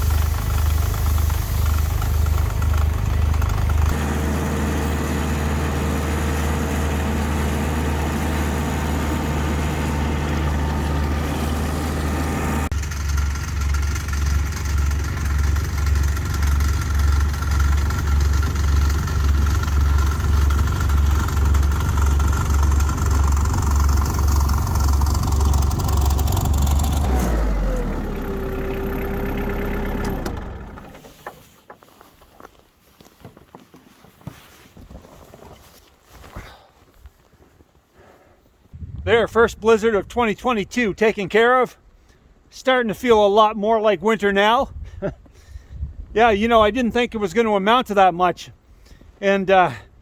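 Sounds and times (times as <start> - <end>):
engine running and winding down: 0.0 - 31.0.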